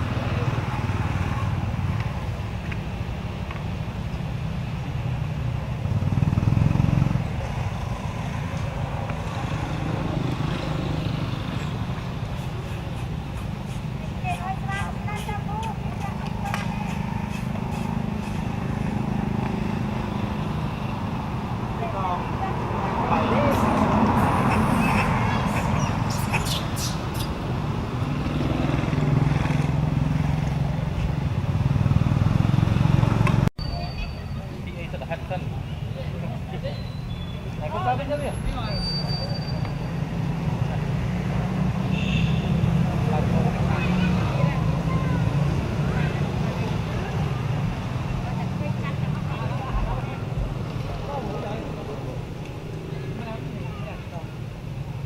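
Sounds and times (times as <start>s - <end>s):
engine humming: 0.0s - 33.5s, 46.2s - 55.0s.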